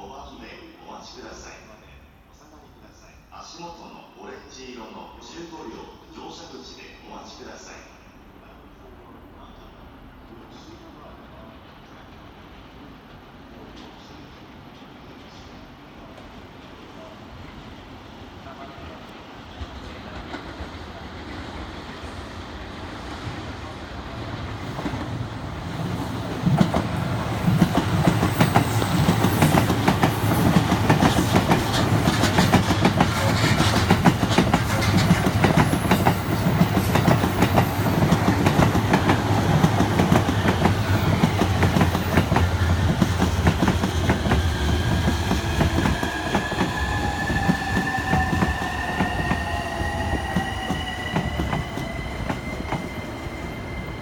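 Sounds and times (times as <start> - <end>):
train wheels clattering: 24.3 - 54.0.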